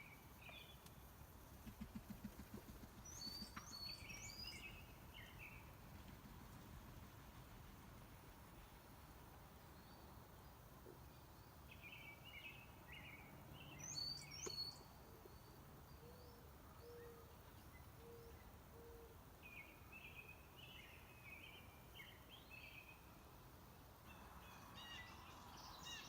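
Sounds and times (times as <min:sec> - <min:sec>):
songbird phrases: 0:03.0 - 0:05.7, 0:09.6 - 0:23.2
low bird coos: 0:16.0 - 0:19.2.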